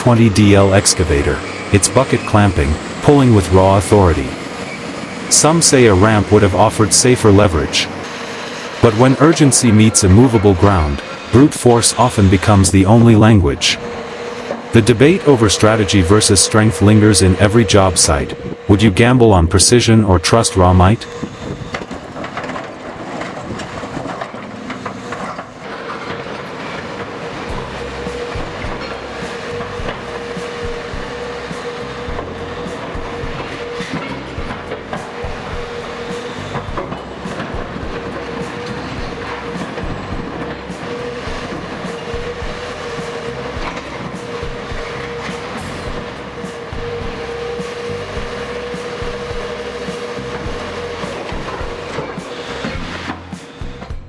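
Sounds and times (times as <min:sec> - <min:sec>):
diesel engine running: 0:00.0 - 0:54.0
steel clattering and creaking: 0:21.0 - 0:54.0.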